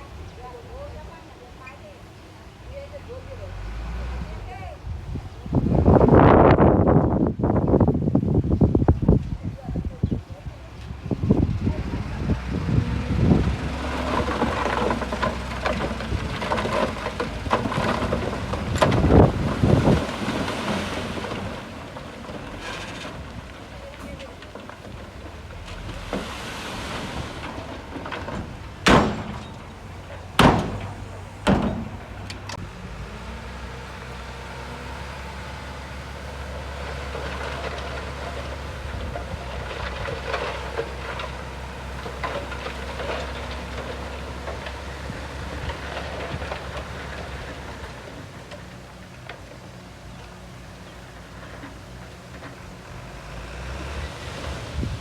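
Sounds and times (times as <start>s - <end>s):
diesel engine drone: 10.9s - 55.0s
loud bangs: 25.8s - 32.6s.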